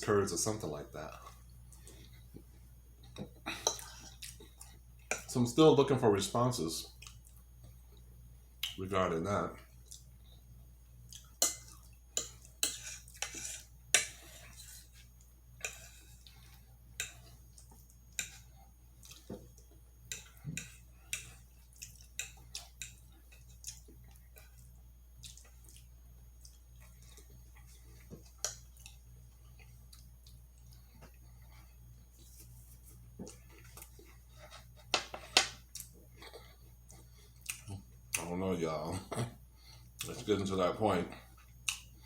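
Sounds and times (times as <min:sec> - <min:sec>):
wet mouth clicks while chewing: 0:21.1 - 0:27.0.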